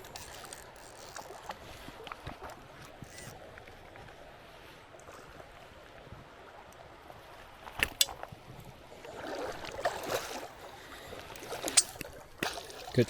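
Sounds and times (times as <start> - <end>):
creek water splashing: 7.2 - 13.0.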